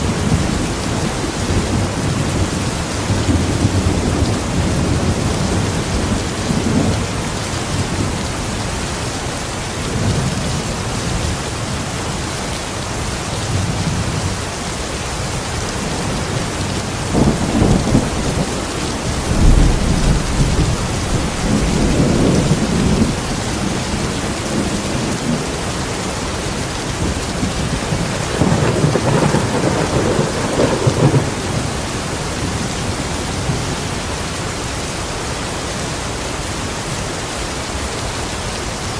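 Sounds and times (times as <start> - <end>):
thunder rumbling: 0.0 - 8.8, 15.7 - 33.8
steady rain: 0.0 - 38.9.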